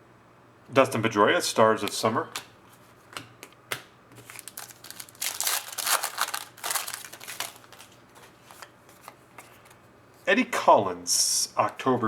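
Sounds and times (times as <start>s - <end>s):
cards and packaging rustling: 4.1s - 9.8s.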